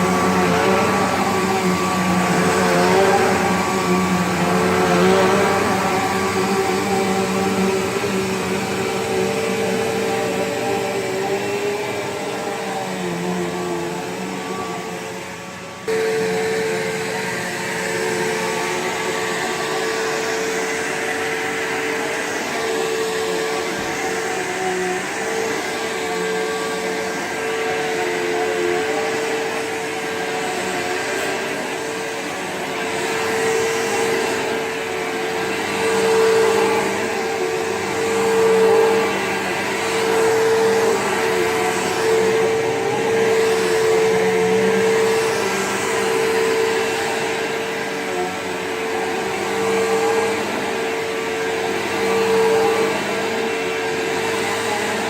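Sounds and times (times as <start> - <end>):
upright vacuum cleaner running: 0.0 - 55.0.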